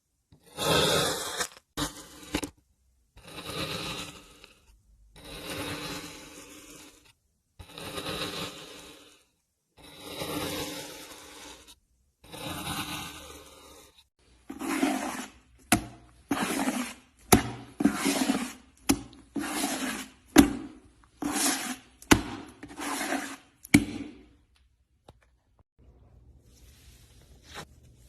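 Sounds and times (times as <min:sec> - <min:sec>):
slime squelching: 0:14.2 - 0:24.6.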